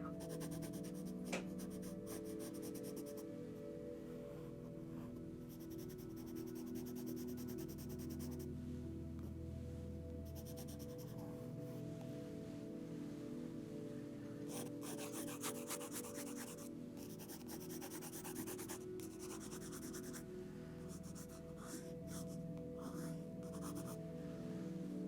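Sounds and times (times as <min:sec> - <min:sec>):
soft music with sustained tones: 0:00.0 - 0:25.0
pencil sketching on paper: 0:00.2 - 0:03.2, 0:05.4 - 0:08.5, 0:10.2 - 0:11.1, 0:14.5 - 0:20.2, 0:20.9 - 0:24.0.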